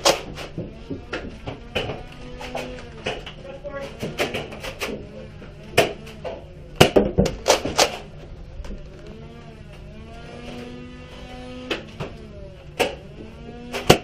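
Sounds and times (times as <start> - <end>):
darts striking: 0.0 - 3.3, 12.8 - 13.0
foam dart blasters firing: 0.0 - 5.0, 5.7 - 8.1.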